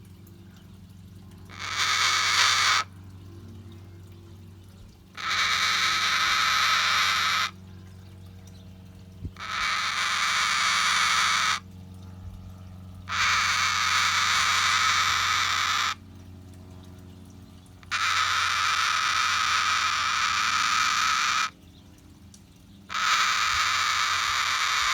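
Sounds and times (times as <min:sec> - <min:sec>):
cockatoo raspy call: 0:01.5 - 0:02.9, 0:05.2 - 0:07.6, 0:09.4 - 0:11.6, 0:13.1 - 0:16.0, 0:17.8 - 0:21.6, 0:22.9 - 0:24.9.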